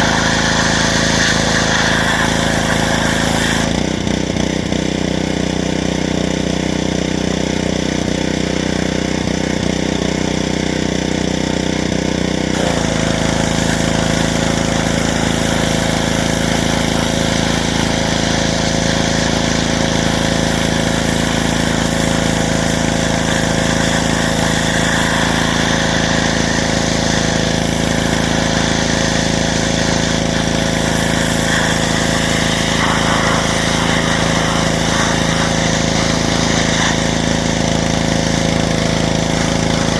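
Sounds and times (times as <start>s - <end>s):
water jet hissing: 0.0s - 3.7s, 12.6s - 39.9s
pressure washer motor: 0.0s - 39.9s.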